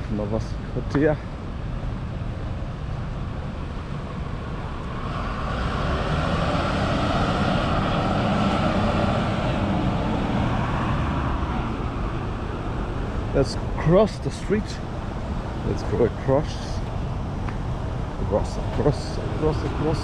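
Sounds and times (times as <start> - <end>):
low rumble of street traffic: 0.0 - 20.0
vehicle passing: 4.2 - 20.0.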